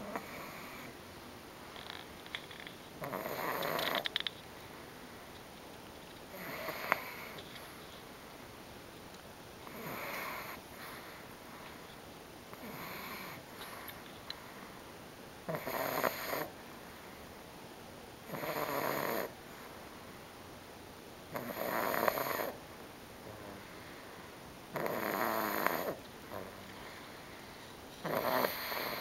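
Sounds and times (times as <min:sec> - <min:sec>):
dog snoring loudly: 0:00.0 - 0:00.9, 0:03.0 - 0:04.1, 0:06.3 - 0:07.4, 0:09.7 - 0:10.6, 0:12.6 - 0:13.4, 0:15.5 - 0:16.5, 0:18.3 - 0:19.4, 0:21.3 - 0:22.6, 0:24.7 - 0:26.6, 0:28.0 - 0:29.0.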